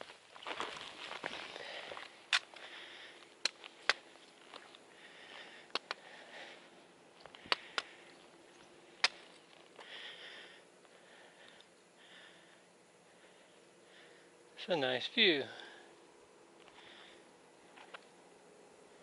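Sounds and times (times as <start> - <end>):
footsteps on rocky trail: 0.0 - 11.6
sharp clicks and taps: 5.7 - 6.0.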